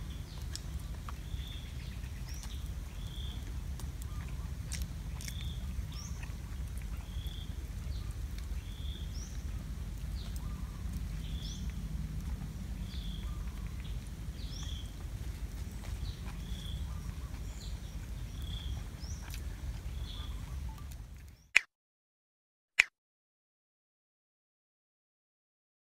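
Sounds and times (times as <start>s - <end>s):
bird calling: 0.0s - 9.4s, 10.2s - 11.7s, 15.7s - 21.0s
steady low rumble: 0.0s - 21.4s.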